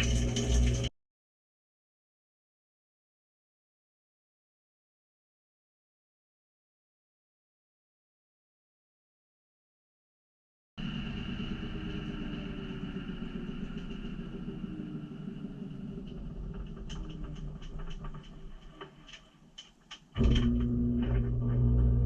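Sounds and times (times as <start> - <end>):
washing machine rumble and whine: 0.0 - 0.9, 10.8 - 19.2, 20.2 - 22.0
loud steady hum: 20.2 - 22.0.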